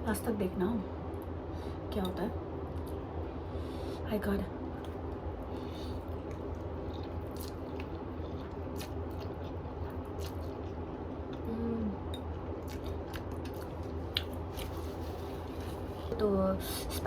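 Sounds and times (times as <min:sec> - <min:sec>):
steady low hum: 0:00.0 - 0:17.0
person chewing food: 0:04.8 - 0:11.5, 0:12.1 - 0:16.1.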